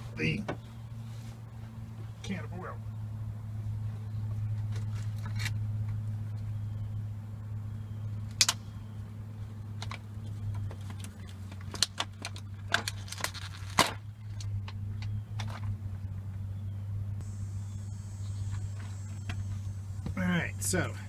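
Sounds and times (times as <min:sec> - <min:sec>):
steady low hum: 0:00.0 - 0:21.0
plastic parts clicking and rattling: 0:09.8 - 0:14.8.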